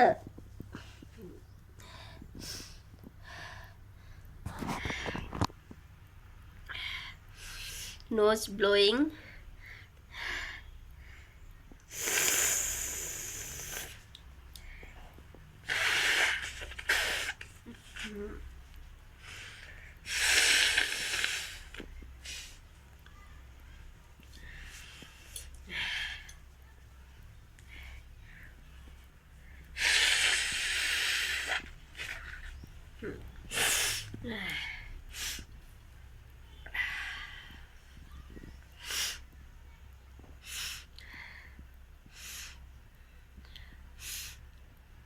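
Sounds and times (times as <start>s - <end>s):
faint breathing: 0.6s - 5.4s, 9.1s - 18.4s, 24.3s - 26.5s, 40.4s - 44.4s
person blowing nose: 11.9s - 13.9s, 15.7s - 17.5s, 20.1s - 21.7s, 29.8s - 32.2s
small sniffs: 11.9s - 14.0s, 29.8s - 32.7s.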